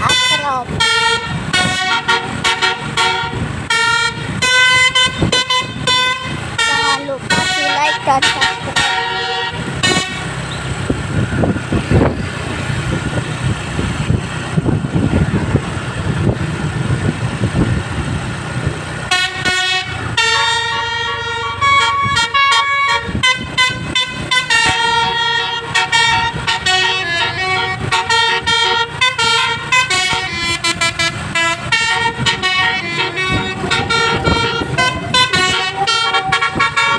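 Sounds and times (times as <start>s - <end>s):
multi-tone bus horn tune: 0.0s - 10.7s, 19.0s - 36.9s
bus engine and road noise: 0.0s - 36.9s.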